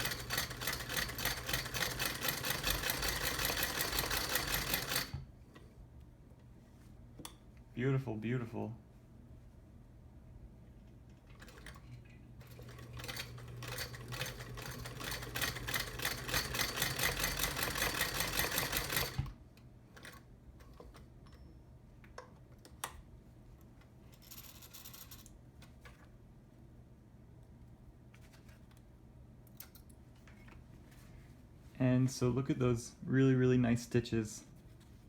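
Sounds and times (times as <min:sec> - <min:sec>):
sewing machine clattering: 0:00.0 - 0:05.2, 0:11.3 - 0:11.8, 0:12.4 - 0:19.3.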